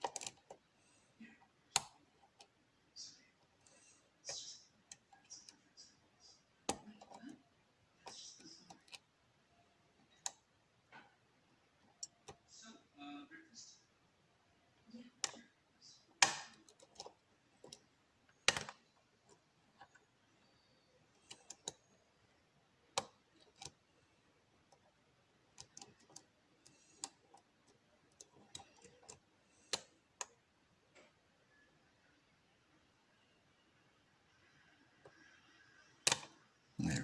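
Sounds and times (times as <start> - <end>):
lock pick clicking pins: 0.0 - 0.6.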